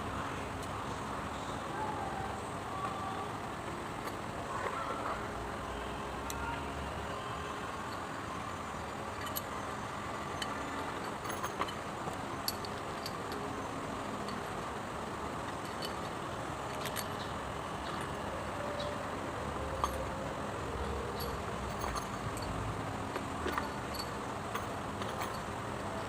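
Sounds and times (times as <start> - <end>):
light metallic clinks and taps: 8.9 - 9.6, 10.4 - 14.6, 19.7 - 25.5.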